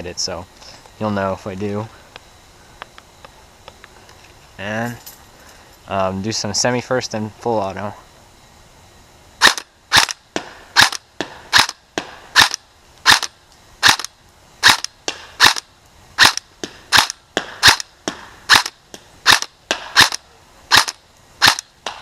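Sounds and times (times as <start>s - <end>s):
airsoft gun single shots: 9.4s - 22.0s.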